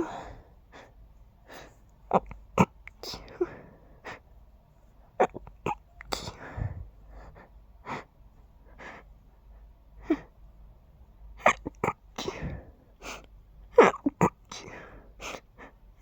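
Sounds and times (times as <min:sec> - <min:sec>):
breaths: 0:00.0 - 0:01.9, 0:03.2 - 0:04.3, 0:06.2 - 0:09.1, 0:14.6 - 0:15.8
person stifling sneezes: 0:11.4 - 0:13.2, 0:13.8 - 0:15.4.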